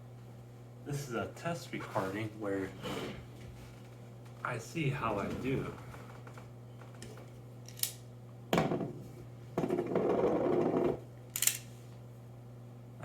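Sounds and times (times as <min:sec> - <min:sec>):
rustling scrape: 0:01.8 - 0:03.8.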